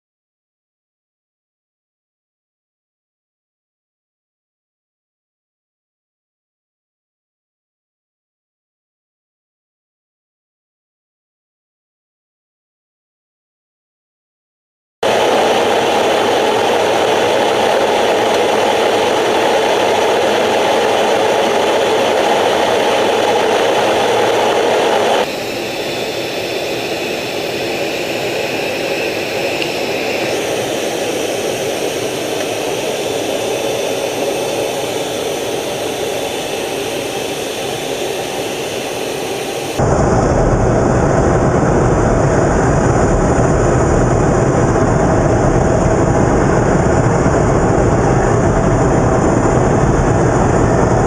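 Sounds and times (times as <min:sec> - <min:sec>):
jet engine noise: 0:15.0 - 0:51.0.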